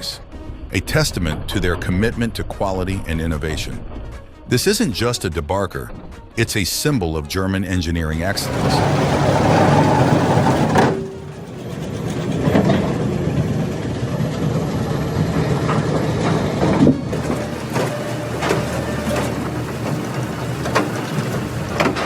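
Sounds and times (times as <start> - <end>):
debarking machine engine: 8.2 - 22.0
sharp knocks and clatter: 8.4 - 22.0.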